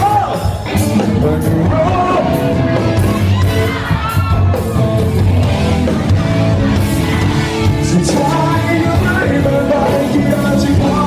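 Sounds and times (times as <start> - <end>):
person singing: 0.0 - 2.5, 7.2 - 11.0
pop-rock band music: 0.0 - 11.0.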